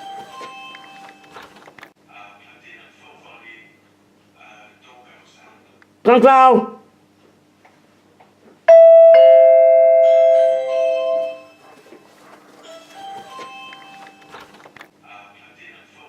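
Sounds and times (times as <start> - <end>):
two-note door chime: 8.7 - 11.6.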